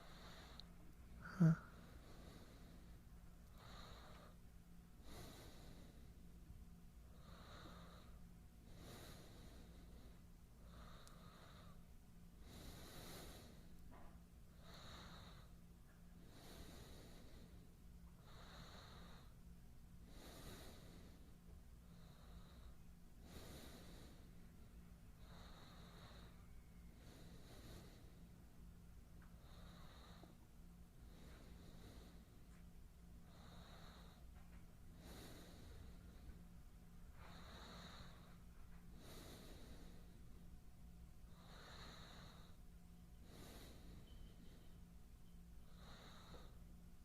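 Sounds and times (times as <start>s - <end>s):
man breathing softly: 0.0s - 47.0s
steady low hum: 0.0s - 47.0s.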